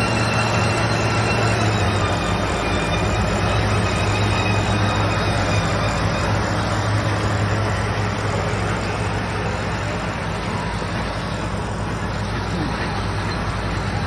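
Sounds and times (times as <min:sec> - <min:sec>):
baler machine noise: 0:00.0 - 0:14.0
tractor engine drone: 0:00.0 - 0:14.0.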